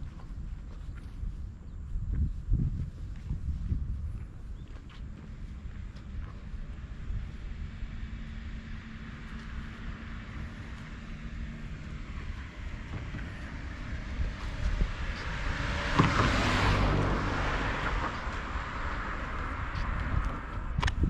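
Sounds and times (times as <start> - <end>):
road vehicle passing: 2.9 - 21.0.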